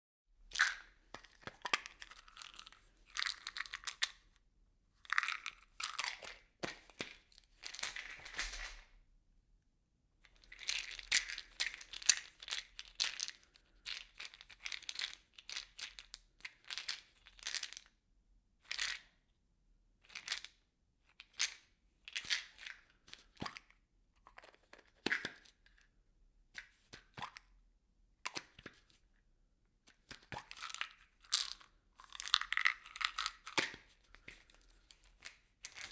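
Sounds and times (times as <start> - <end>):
objects rattling in plastic bottle: 7.6 - 8.9.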